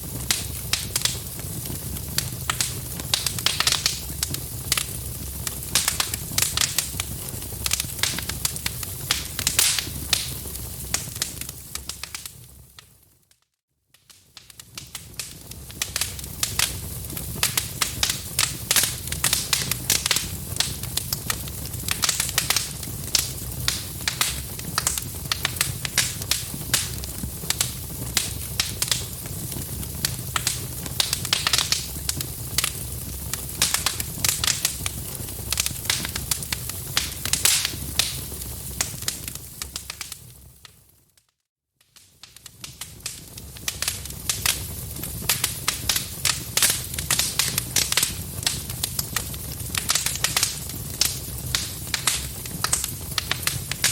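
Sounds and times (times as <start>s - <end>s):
wood fire crackling: 0.0s - 41.2s, 41.8s - 53.9s
small pops and snaps: 0.3s - 4.9s, 11.0s - 16.7s, 30.4s - 32.8s, 33.4s - 38.2s, 38.8s - 44.6s, 49.8s - 53.9s.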